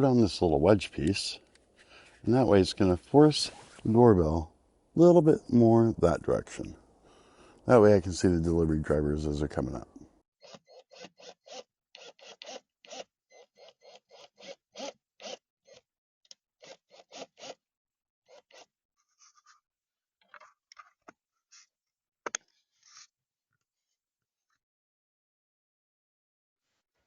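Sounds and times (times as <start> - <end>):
screwdriver turning screw: 10.4 - 17.7, 18.3 - 18.7.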